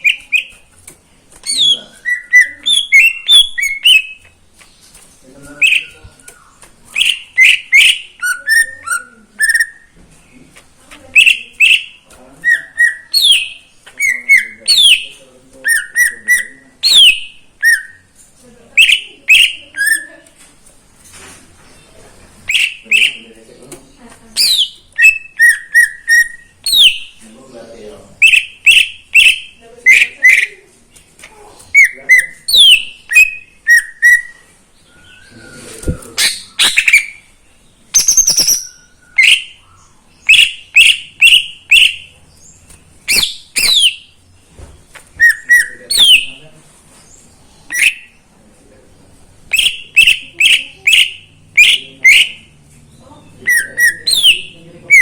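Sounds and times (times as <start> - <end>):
bird singing whistled notes: 1.5 - 4.3, 24.4 - 27.2, 31.8 - 37.3, 37.9 - 42.1, 43.1 - 44.2, 45.1 - 46.4, 53.3 - 55.0.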